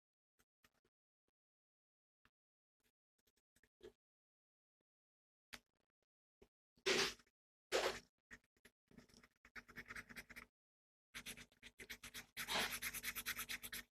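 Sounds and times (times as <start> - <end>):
rapid scratching strokes: 9.0 - 10.5, 11.2 - 14.0.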